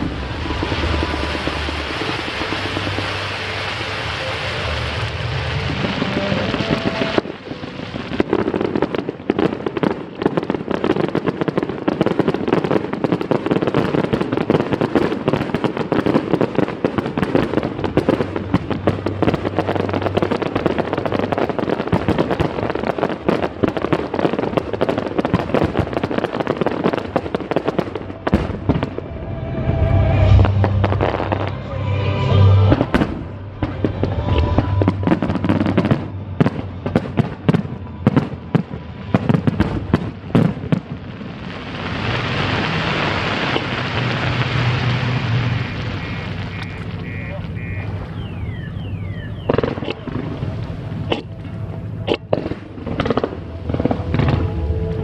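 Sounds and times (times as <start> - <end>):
fireworks crackling and banging: 0.0 - 55.0.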